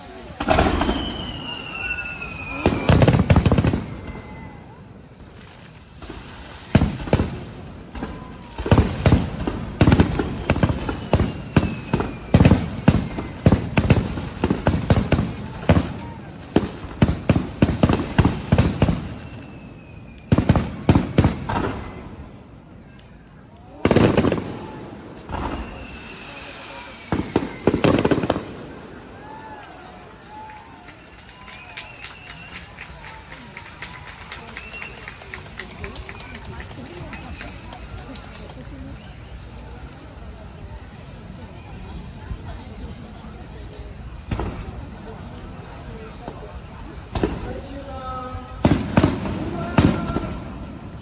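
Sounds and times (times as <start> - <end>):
fireworks shells bursting: 0.0 - 4.0
faint falling whistles: 0.4 - 4.8, 10.4 - 14.0, 18.9 - 22.2, 25.3 - 41.8.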